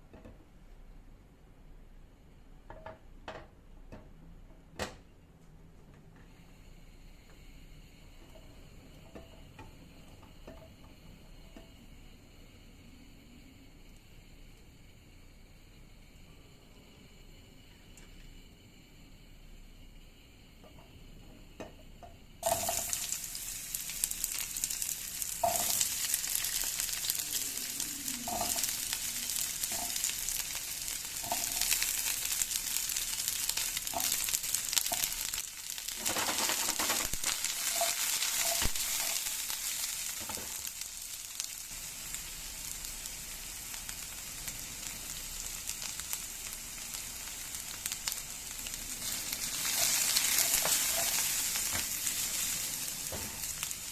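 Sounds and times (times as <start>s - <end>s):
food sizzling in oil: 22.4s - 53.9s.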